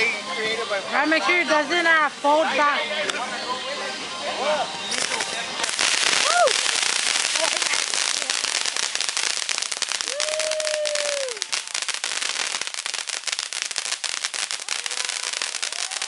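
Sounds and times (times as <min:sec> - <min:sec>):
firecrackers popping: 0:04.9 - 0:16.0.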